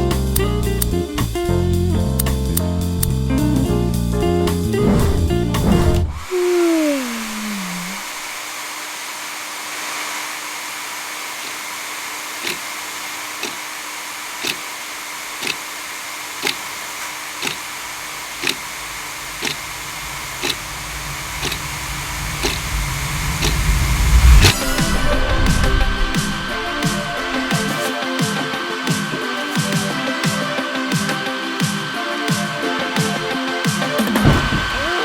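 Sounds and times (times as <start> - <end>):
hair dryer blowing: 6.1 - 32.4
sharp ticks: 18.4 - 18.6, 19.4 - 19.6, 20.4 - 20.7.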